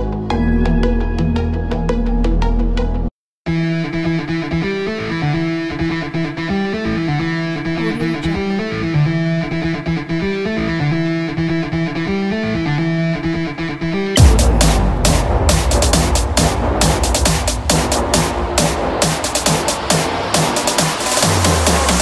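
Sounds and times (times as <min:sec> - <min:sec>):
plucked guitar music: 0:03.5 - 0:14.2
music with heavy beat: 0:14.2 - 0:22.0.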